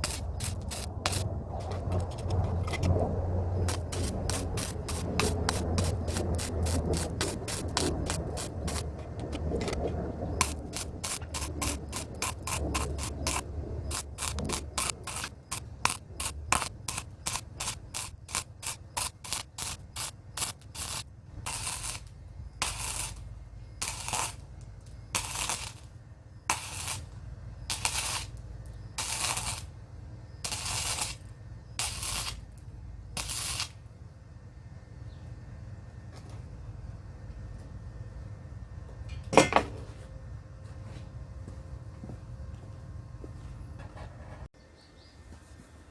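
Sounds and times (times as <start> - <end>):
arc welding crackling and hissing: 0.0 - 33.9
low steady hum: 0.0 - 45.9.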